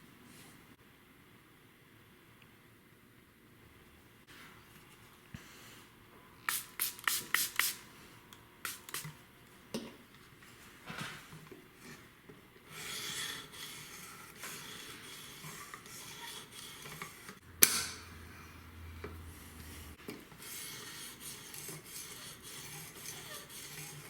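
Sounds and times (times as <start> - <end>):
knife blade scraping on sharpener: 12.7 - 17.4, 20.4 - 24.0.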